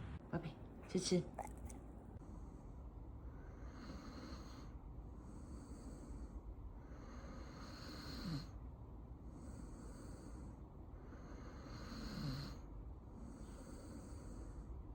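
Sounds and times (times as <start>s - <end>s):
dog snoring: 1.4s - 1.8s, 3.4s - 4.7s, 6.9s - 8.6s, 11.1s - 14.6s.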